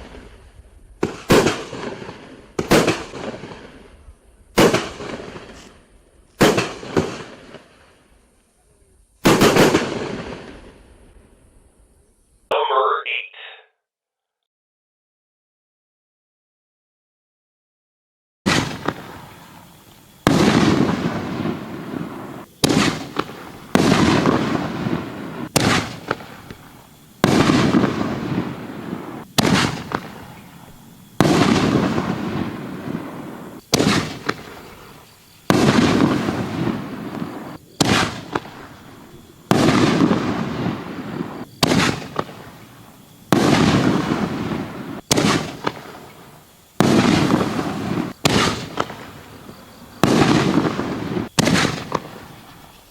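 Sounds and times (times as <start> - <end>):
small firework pops: 1.0 - 3.8, 4.6 - 8.6, 18.5 - 28.6, 29.2 - 32.2, 33.6 - 34.6, 35.5 - 38.9, 39.5 - 42.6, 43.3 - 46.2, 46.8 - 52.7
fireworks bangs: 1.0 - 5.8, 6.4 - 7.9, 9.2 - 10.8, 18.5 - 52.7.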